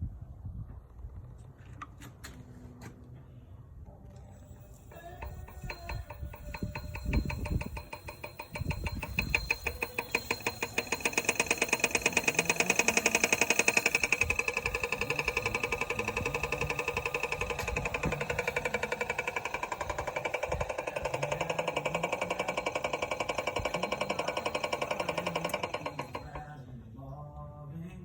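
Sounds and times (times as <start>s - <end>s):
wood lathe ticking: 4.7s - 26.6s.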